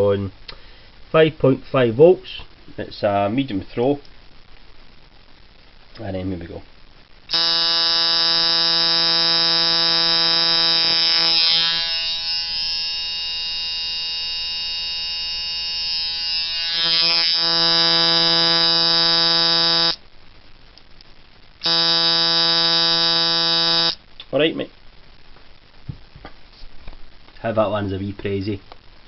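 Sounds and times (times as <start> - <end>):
tattoo machine buzzing: 7.3 - 20.0, 21.6 - 24.0.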